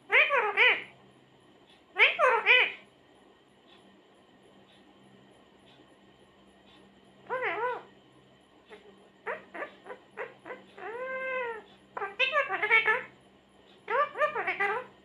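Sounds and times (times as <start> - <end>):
parrot calling and chirping: 0.1 - 0.9, 2.0 - 2.8, 7.3 - 7.9, 8.7 - 13.1, 13.8 - 14.9.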